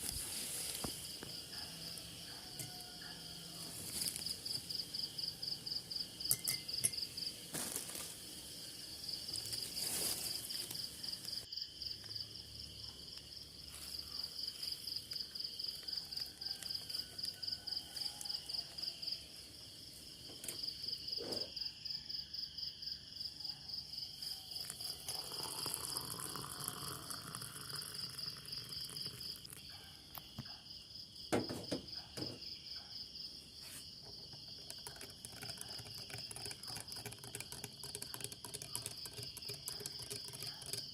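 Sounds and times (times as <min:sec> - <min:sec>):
crickets chirping: 0:00.0 - 0:40.9.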